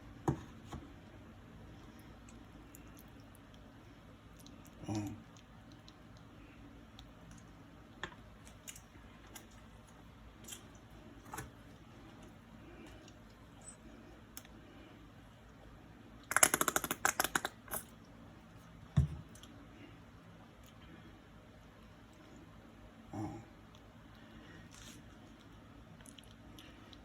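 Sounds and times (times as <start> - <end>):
rapid clicking: 16.3 - 17.5
utensils clicking and tapping: 16.3 - 17.8.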